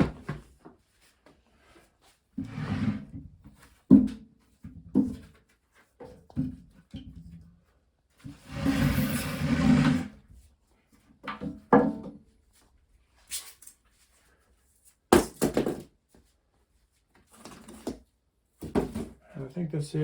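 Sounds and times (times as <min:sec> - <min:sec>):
tile scraping across floor: 0:08.2 - 0:10.3.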